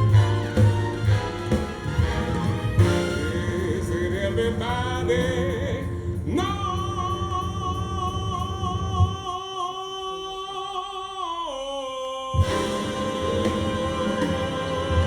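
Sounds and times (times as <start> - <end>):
gospel blues song over loudspeakers: 0.0 - 15.0
voices singing long note: 12.4 - 15.0.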